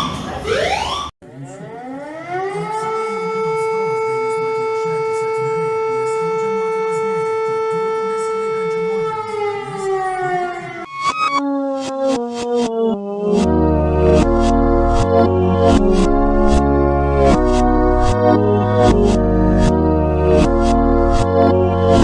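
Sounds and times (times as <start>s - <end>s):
siren winding up and down: 0.0s - 22.0s.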